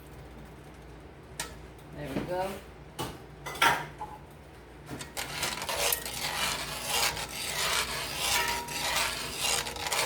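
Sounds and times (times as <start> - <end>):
utensil scraping pan stirring sauce: 5.0 - 10.0.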